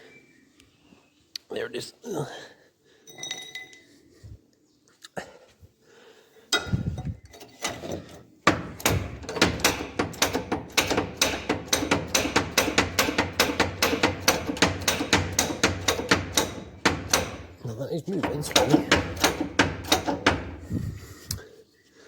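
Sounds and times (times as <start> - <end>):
power tool rapid metallic knocks: 8.4 - 17.6, 18.2 - 20.6.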